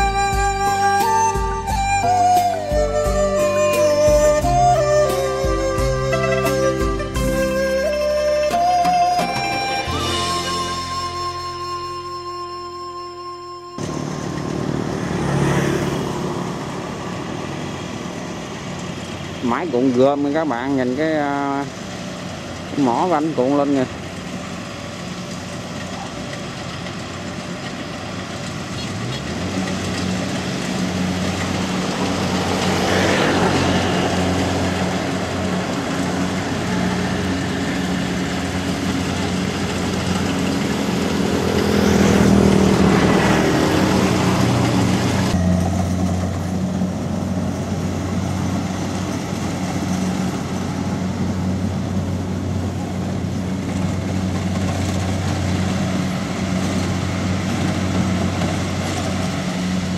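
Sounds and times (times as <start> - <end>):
combine harvester diesel engine drone: 0.0 - 59.9.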